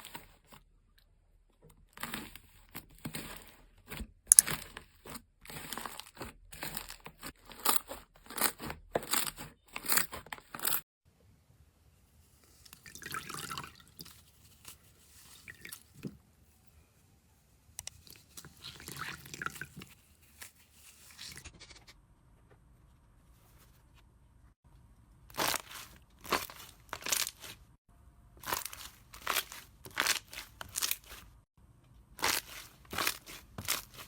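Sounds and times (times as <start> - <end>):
wet slime squish: 17.8 - 20.0, 25.3 - 27.7, 28.4 - 31.4, 32.2 - 34.0
crunchy slime crackling: 25.3 - 27.7, 28.4 - 31.3, 32.2 - 34.0.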